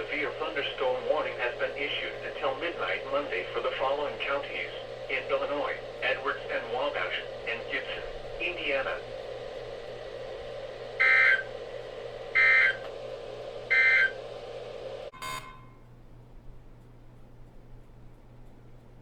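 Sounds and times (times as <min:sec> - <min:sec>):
steady radio hum: 0:00.0 - 0:15.7
digital data tone bursts: 0:11.0 - 0:11.5, 0:12.4 - 0:12.8, 0:13.7 - 0:14.2, 0:15.1 - 0:15.8.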